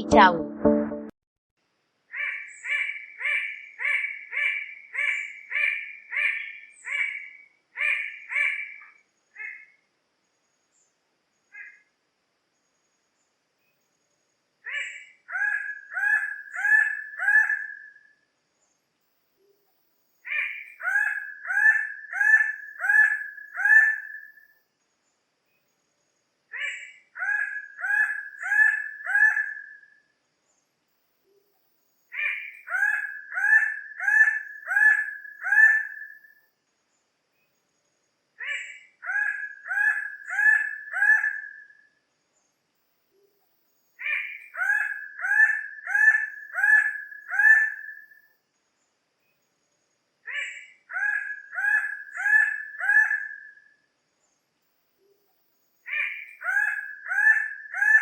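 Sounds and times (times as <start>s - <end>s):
bird calls: 26.5s - 29.9s, 32.1s - 36.3s, 38.4s - 41.8s, 44.0s - 48.2s, 50.3s - 53.7s, 55.8s - 58.0s.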